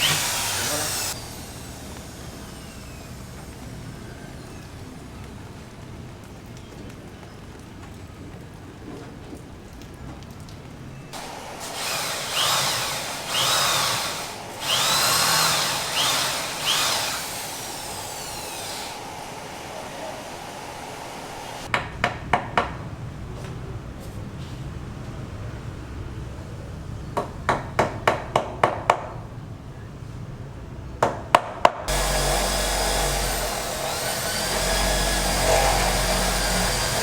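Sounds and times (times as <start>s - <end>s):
power tool whining: 0.0s - 5.2s, 11.2s - 21.7s, 31.9s - 37.0s.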